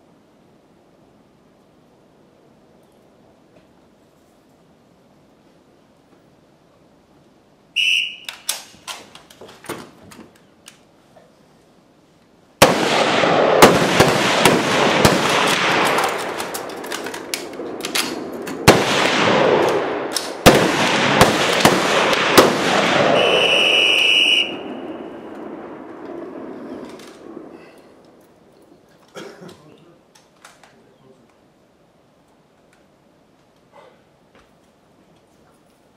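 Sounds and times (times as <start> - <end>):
referee's whistle blast: 7.8 - 8.4, 23.1 - 25.0
rifle shots echoing: 12.6 - 27.5.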